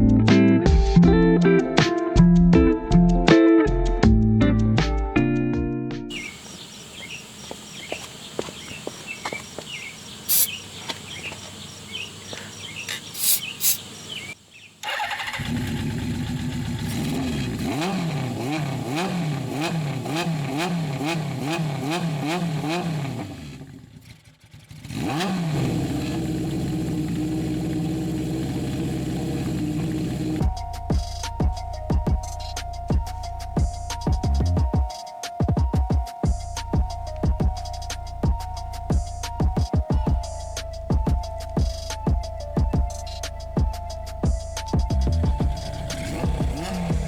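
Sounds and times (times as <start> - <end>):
light clicks and chirps: 6.1 - 14.8, 40.0 - 45.3
motorcycle engine revving and idling: 6.1 - 34.8, 36.2 - 47.0.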